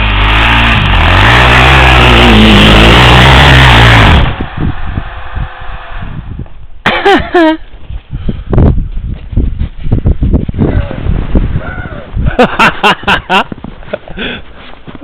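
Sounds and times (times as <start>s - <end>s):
engine revving loudly: 0.0s - 6.4s.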